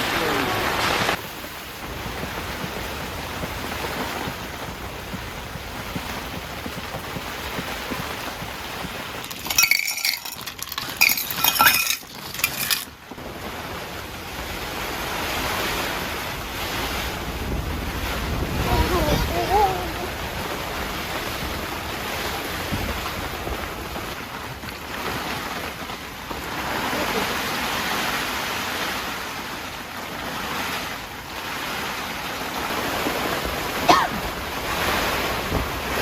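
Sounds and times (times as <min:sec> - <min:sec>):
gusting wind: 0:00.0 - 0:36.0
heavy rain on a tent: 0:00.0 - 0:36.0
clattering and clinking: 0:05.9 - 0:12.9.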